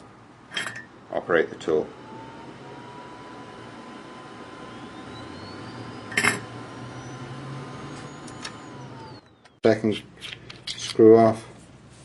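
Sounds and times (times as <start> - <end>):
high tone rising in pitch: 2.0 - 9.6.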